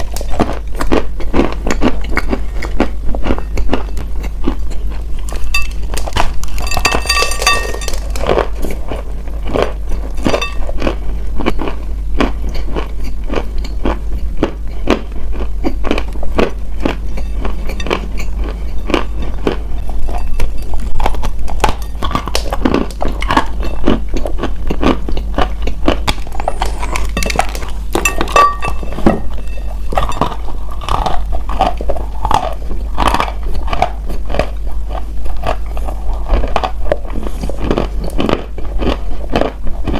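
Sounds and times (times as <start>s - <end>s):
crunching of hard food: 0.0s - 39.9s.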